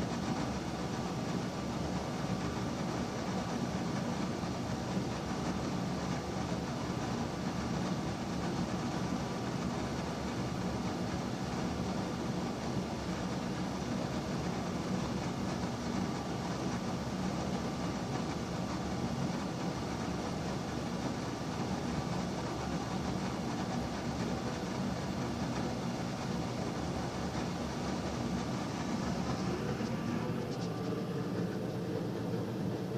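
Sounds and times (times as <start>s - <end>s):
exhaust fan humming: 0.0s - 32.9s.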